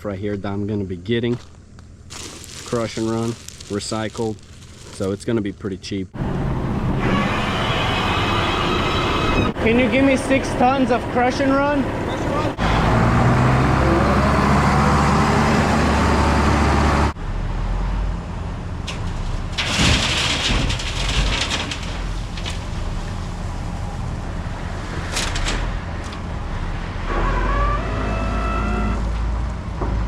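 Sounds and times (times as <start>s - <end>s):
rising engine whine: 6.2s - 18.6s, 26.2s - 29.9s
diesel engines running: 6.2s - 30.0s
rock pouring into trailer: 19.6s - 23.2s.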